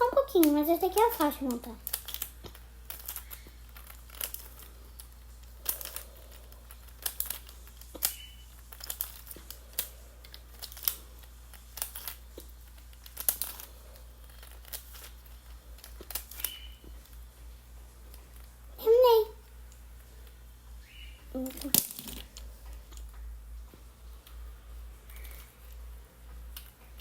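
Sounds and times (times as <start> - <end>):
steady low hum: 0.0 - 27.0
plastic toy pieces clicking: 0.4 - 16.6, 21.4 - 23.1.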